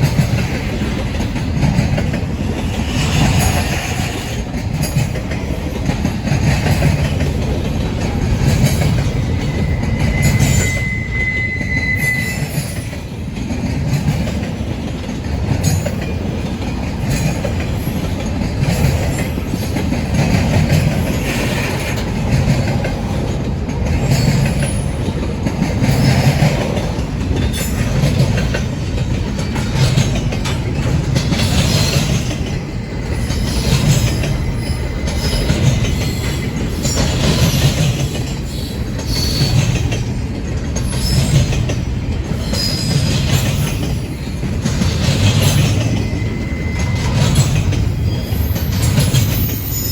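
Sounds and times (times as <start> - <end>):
train cars rumbling past: 0.0 - 49.9
wheels clicking over rail joints: 0.0 - 49.9
high wheel squeal: 8.5 - 13.1, 31.5 - 39.9, 40.8 - 41.6, 42.3 - 44.4, 45.5 - 49.9.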